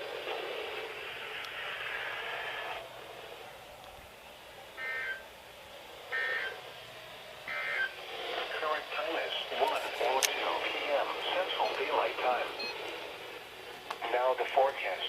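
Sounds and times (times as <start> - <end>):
radio receiver hiss: 0.0 - 2.9, 7.5 - 15.0
short electronic beeps: 12.6 - 12.8.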